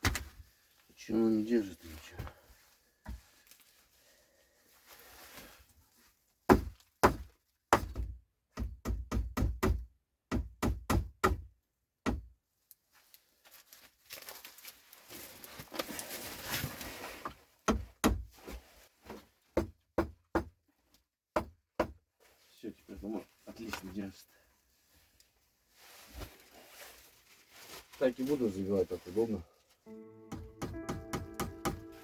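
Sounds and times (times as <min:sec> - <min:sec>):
hammer knocking on wood: 0:30.3 - 0:31.8.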